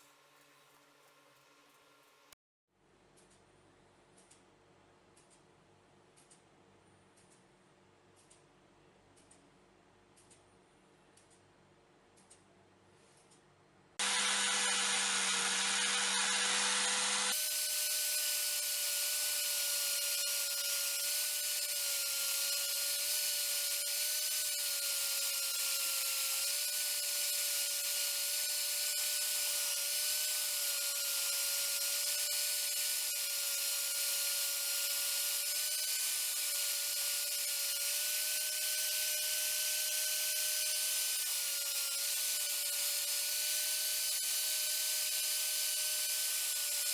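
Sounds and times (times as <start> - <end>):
power tool motor whine: 14.0 - 46.9.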